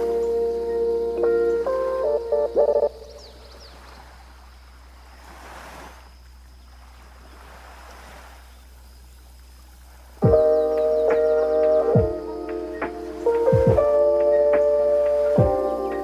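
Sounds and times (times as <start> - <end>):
faint bird chirps: 0.0 - 5.4, 6.0 - 16.0
waves washing onto beach: 3.0 - 16.0.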